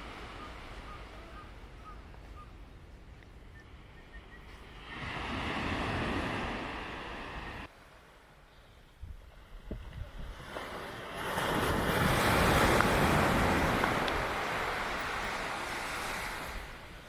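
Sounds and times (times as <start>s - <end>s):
ocean wave breaking: 0.0s - 1.7s, 4.7s - 7.7s, 10.3s - 17.0s
wind rumble on microphone: 8.9s - 17.0s.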